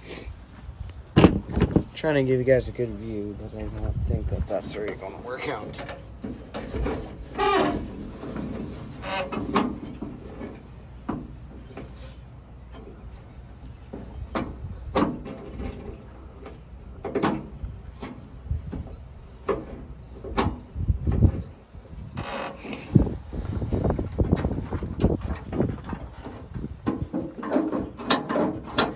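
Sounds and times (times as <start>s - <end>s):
steady low rumble: 0.3s - 5.8s.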